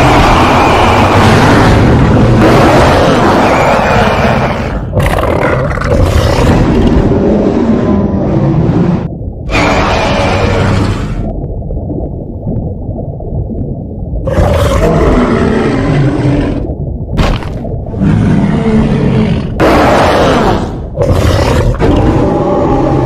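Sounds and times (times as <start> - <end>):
monster roars: 0.0 - 11.2, 14.3 - 16.6, 17.9 - 23.0
low muffled rumble: 10.8 - 14.3.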